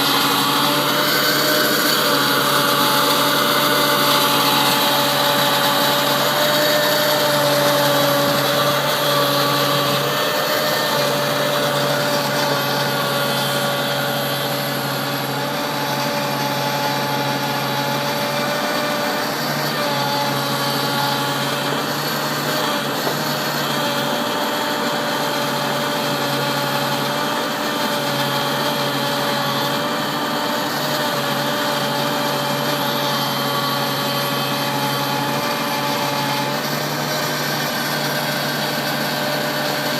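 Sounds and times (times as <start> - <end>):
steady whine: 0.0 - 24.3
tractor diesel engine running: 0.0 - 39.9.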